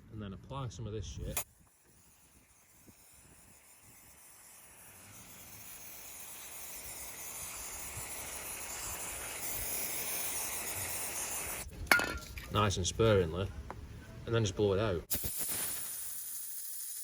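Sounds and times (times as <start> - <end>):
aerosol can spraying hiss: 1.3 - 11.7, 15.1 - 17.0.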